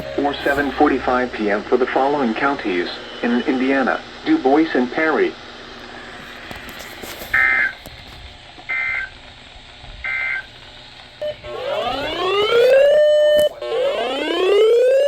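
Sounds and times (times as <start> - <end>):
rising siren alert tone: 0.0 - 3.5, 11.2 - 15.0
two-tone warbling data bursts: 0.0 - 4.7.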